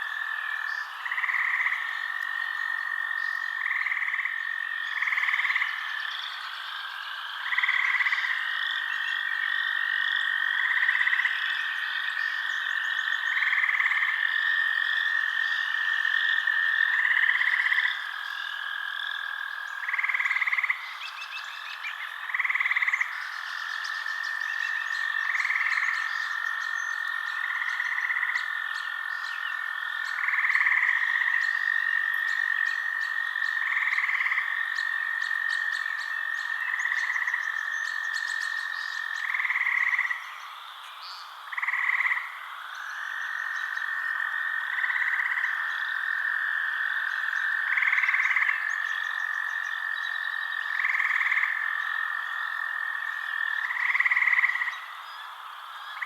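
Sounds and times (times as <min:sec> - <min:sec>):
frogs trilling: 0:00.0 - 0:56.0
loud frog calls: 0:00.0 - 0:56.0
faint clicking calls: 0:01.1 - 0:02.4.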